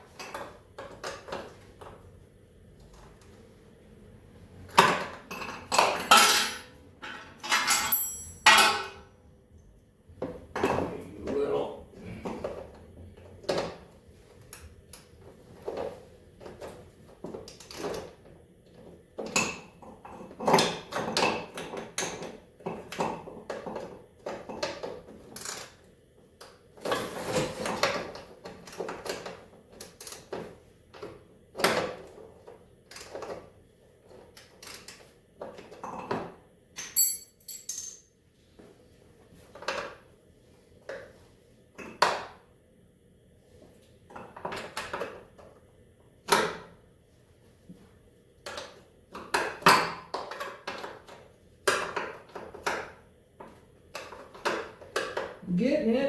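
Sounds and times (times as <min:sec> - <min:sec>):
wrenches clinking on bolts: 0:05.7 - 0:09.0, 0:36.8 - 0:38.0.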